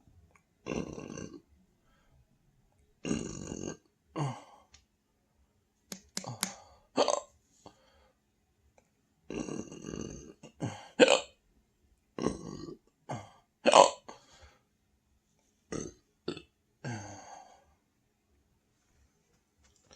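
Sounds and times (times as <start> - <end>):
person belching: 0.6 - 1.4, 3.0 - 4.4, 7.0 - 7.3, 9.3 - 11.3, 12.2 - 14.0, 15.7 - 17.3.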